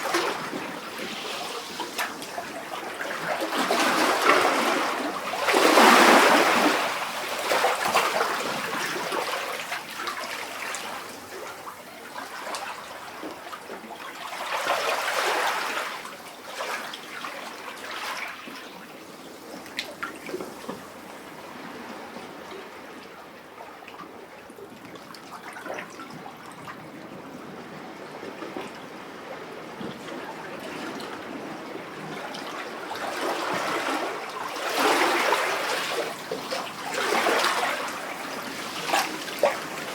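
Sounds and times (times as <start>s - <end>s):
sea waves sloshing in rocks: 0.0s - 11.4s, 29.0s - 39.9s.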